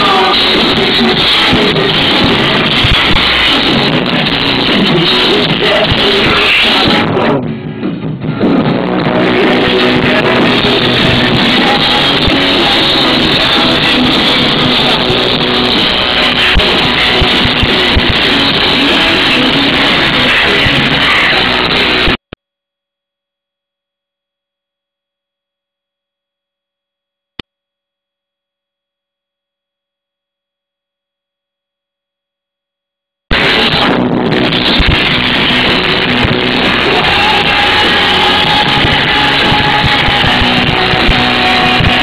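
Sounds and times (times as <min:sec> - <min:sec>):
rock band playing live: 0:00.0 - 0:22.2, 0:33.3 - 0:42.0.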